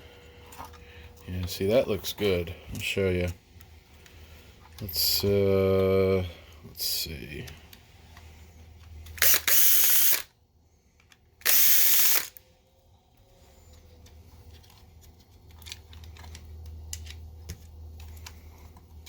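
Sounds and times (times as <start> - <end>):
cordless screwdriver whirring: 9.2 - 10.3, 11.4 - 12.4.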